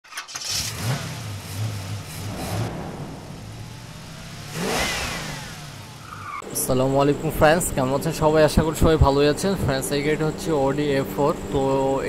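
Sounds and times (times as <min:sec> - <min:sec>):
car engine revving: 0:00.3 - 0:08.0.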